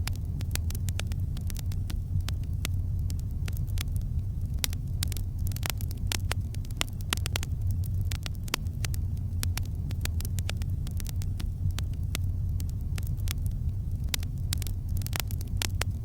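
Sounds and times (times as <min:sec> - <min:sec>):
fire crackling and popping: 0:00.0 - 0:16.0
low fire rumble: 0:00.0 - 0:16.0.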